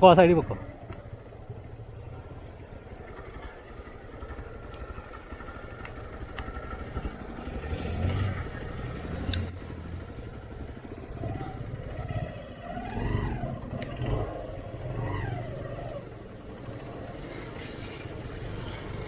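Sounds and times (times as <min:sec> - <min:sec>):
motorcycle engine at low revs: 0:00.0 - 0:19.0
faint clicks: 0:00.8 - 0:01.2, 0:04.5 - 0:06.7, 0:13.7 - 0:14.0.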